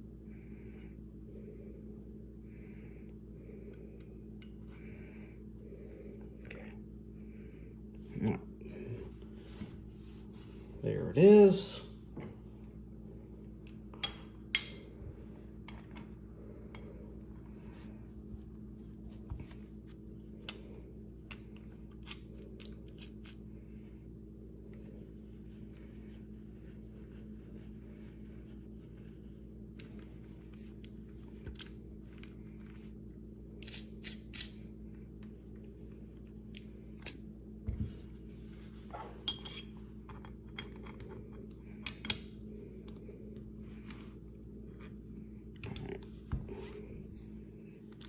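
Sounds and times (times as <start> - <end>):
steady low hum: 0.0 - 48.0.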